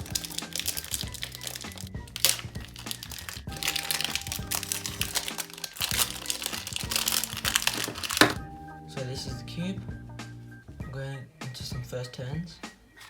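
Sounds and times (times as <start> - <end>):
packaging crinkling: 0.0 - 8.4
background music: 0.0 - 13.0.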